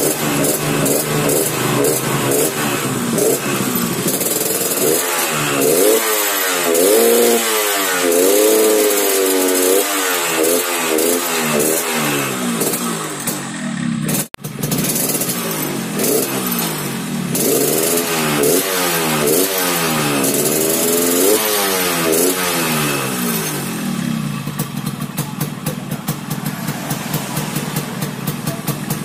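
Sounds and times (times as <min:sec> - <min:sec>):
motorcycle engine revving: 0:00.0 - 0:29.0.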